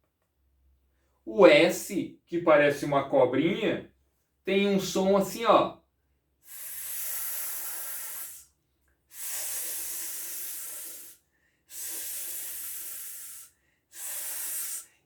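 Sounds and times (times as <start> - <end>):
man hissing: 6.4 - 8.5, 9.1 - 15.0.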